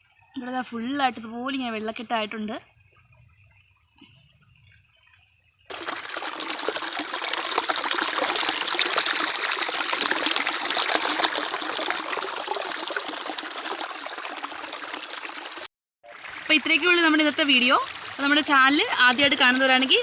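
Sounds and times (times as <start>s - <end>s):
water running and trickling: 5.7s - 20.0s.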